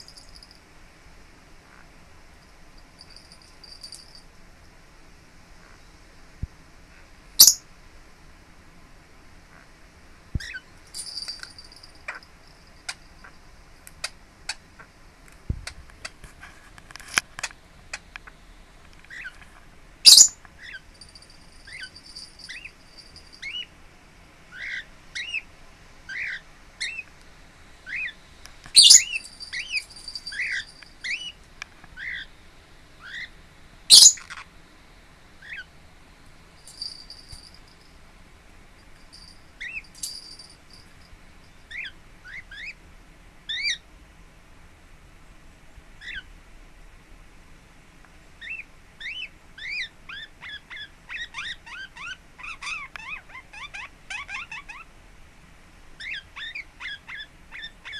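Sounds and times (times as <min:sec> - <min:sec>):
parakeet chirping: 0:07.4 - 0:07.6, 0:10.4 - 0:11.3, 0:19.1 - 0:19.4, 0:20.0 - 0:20.8, 0:21.6 - 0:22.8, 0:23.4 - 0:23.7, 0:24.5 - 0:25.5, 0:26.1 - 0:27.0, 0:27.8 - 0:31.4, 0:32.0 - 0:32.3, 0:33.0 - 0:34.4, 0:35.4 - 0:35.7, 0:39.6 - 0:39.9, 0:41.7 - 0:42.8, 0:46.0 - 0:46.2, 0:48.4 - 0:54.9, 0:56.0 - 0:57.9
sharp parakeet calls: 0:07.4 - 0:07.6, 0:20.0 - 0:20.8, 0:24.5 - 0:25.4, 0:26.1 - 0:27.0, 0:27.8 - 0:31.4, 0:32.0 - 0:32.3, 0:33.0 - 0:34.5, 0:35.4 - 0:35.7, 0:46.0 - 0:46.3, 0:48.4 - 0:54.9, 0:56.0 - 0:57.9.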